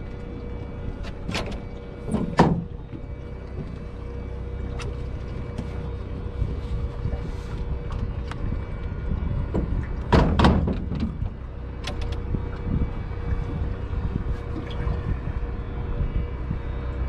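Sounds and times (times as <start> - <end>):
faint hum: 0.0 - 17.0
low rumble: 0.0 - 17.0.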